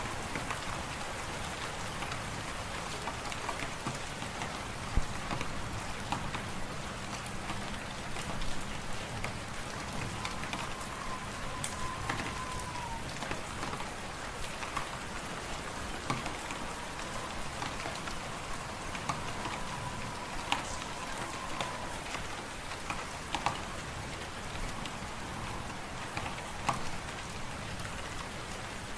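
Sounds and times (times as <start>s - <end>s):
wood fire crackling: 9.5s - 24.0s
faint thin whistle: 9.8s - 13.4s, 16.0s - 22.4s.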